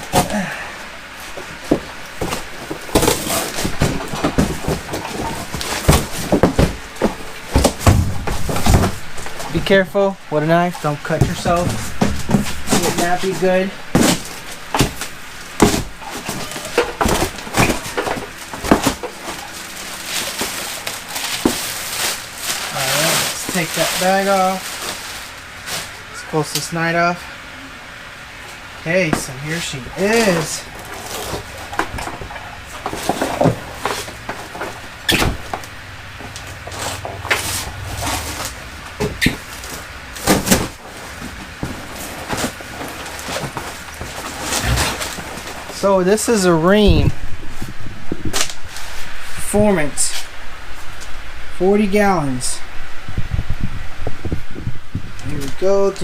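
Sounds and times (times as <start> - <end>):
knocks thuds and scrapes of cardboard: 1.3 - 9.7, 10.8 - 25.9, 29.0 - 45.8
packaging rustling: 1.4 - 9.6, 10.8 - 26.1, 29.1 - 45.8
loud thumps: 1.5 - 9.5.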